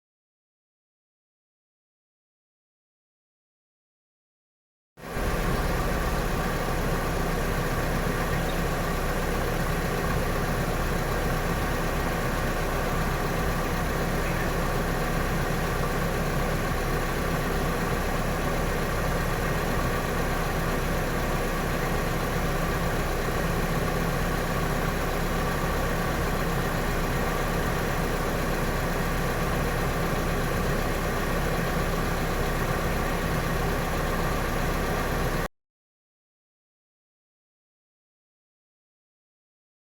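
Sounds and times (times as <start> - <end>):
car engine idling: 5.0 - 35.5.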